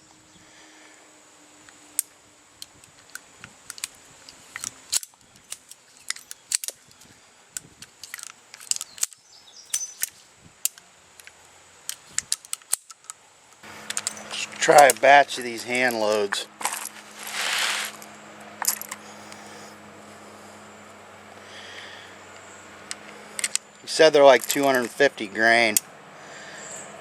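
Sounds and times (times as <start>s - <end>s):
revolver metallic clicks: 1.6s - 16.4s, 22.3s - 25.9s.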